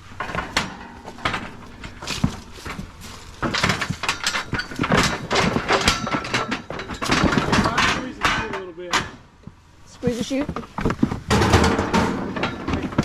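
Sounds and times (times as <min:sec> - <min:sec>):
sharp knocks: 0:00.0 - 0:08.5
metal chute rattling and clanging: 0:00.0 - 0:09.2.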